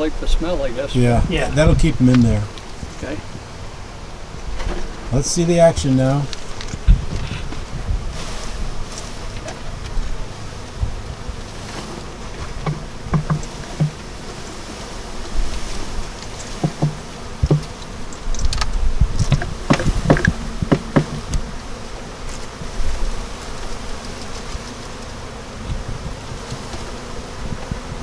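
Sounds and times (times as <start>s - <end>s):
honeybees buzzing: 0.0s - 28.0s
knocks on bee package: 12.6s - 14.0s, 16.6s - 17.8s, 19.2s - 21.5s.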